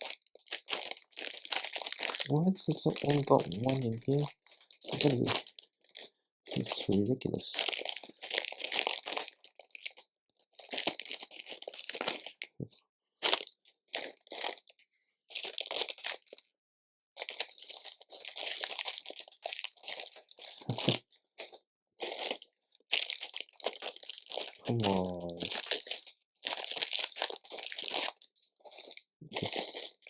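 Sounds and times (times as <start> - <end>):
plastic bricks rustling clatter: 25.4 - 30.0.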